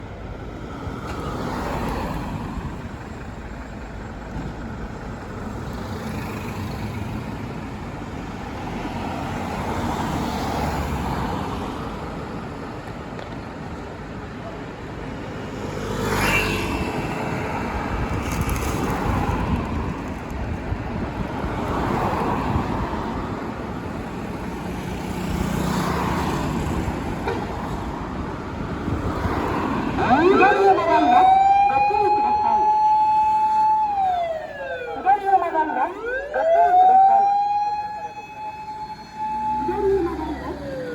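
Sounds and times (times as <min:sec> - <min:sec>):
vehicles passing: 0:00.0 - 0:40.9
brief high steady tone: 0:39.3 - 0:40.9.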